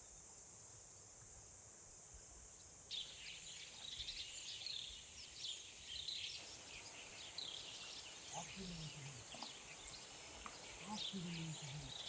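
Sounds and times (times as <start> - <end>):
crickets droning: 1.9 - 12.0
small birds chirping: 3.0 - 12.0.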